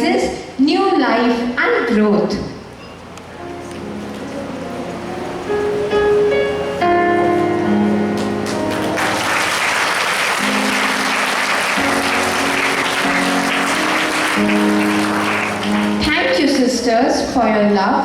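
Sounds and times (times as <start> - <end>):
instrumental music: 2.8 - 16.6
audience clapping: 7.9 - 16.6.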